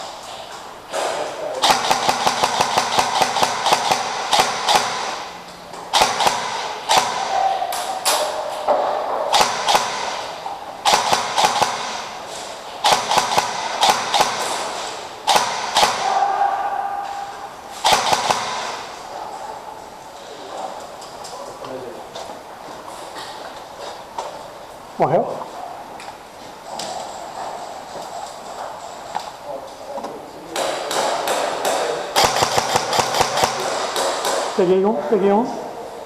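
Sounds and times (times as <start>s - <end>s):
rapid rattle of airsoft shots: 0.2s - 16.5s, 17.7s - 19.6s, 30.5s - 34.8s.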